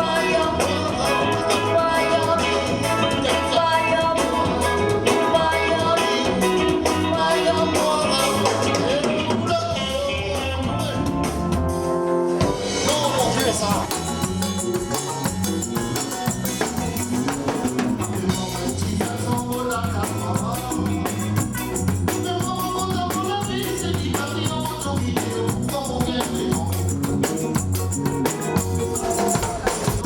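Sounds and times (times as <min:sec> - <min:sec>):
bass line: 0:00.0 - 0:30.0
drum kit beat: 0:00.0 - 0:30.0
shaker or tambourine: 0:12.9 - 0:30.0.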